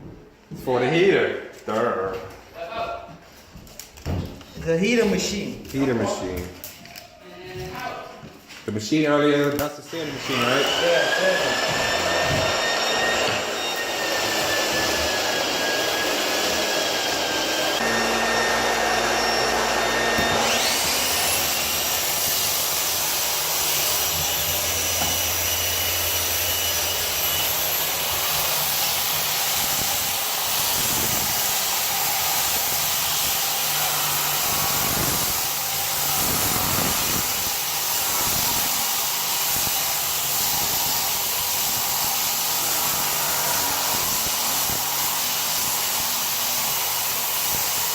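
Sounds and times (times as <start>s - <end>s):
motor machine whirring and whining: 10.1s - 22.4s.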